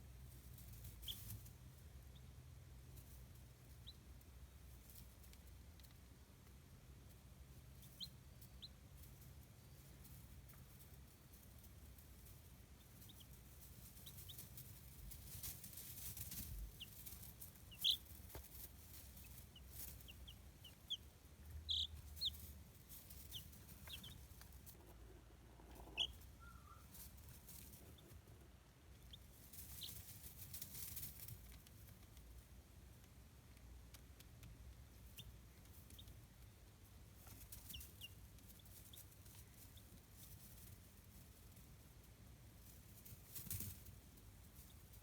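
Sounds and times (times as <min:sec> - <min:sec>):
baby chicks peeping: 0:00.0 - 0:45.0
faint rustling: 0:08.9 - 0:33.1.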